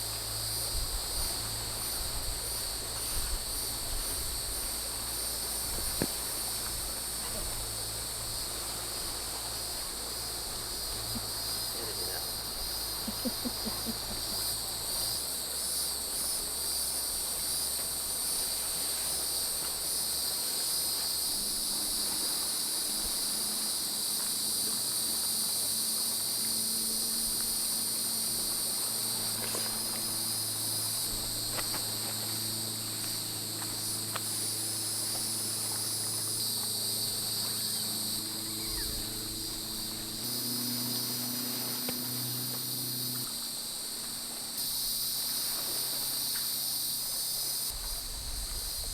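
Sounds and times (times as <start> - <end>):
insects trilling: 0.0 - 48.9
faint low hum: 28.6 - 44.5.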